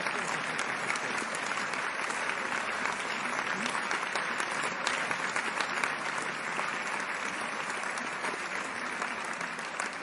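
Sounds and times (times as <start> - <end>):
audience applauding: 0.0 - 10.0.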